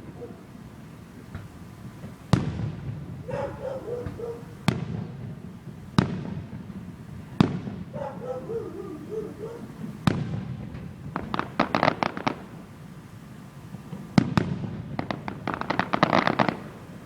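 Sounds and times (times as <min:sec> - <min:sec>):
firework shells bursting: 0:09.8 - 0:17.0.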